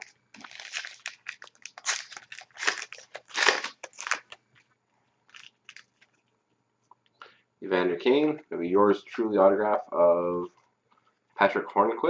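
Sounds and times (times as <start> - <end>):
card pack wrapper crinkling: 0.0 - 4.4, 5.3 - 6.2.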